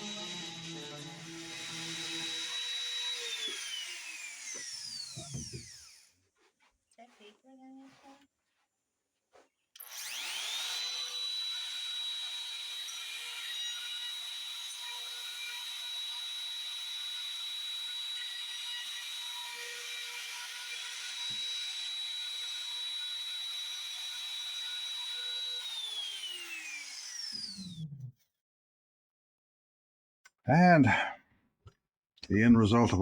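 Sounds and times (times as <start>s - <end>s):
wood router whining: 0.0s - 6.4s, 9.8s - 28.1s.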